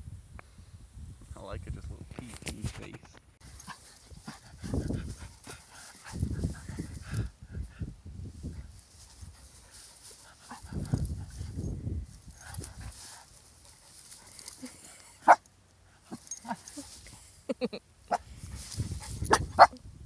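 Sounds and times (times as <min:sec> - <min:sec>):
low rustling: 0:02.1 - 0:17.4
dogs yapping: 0:13.8 - 0:15.4.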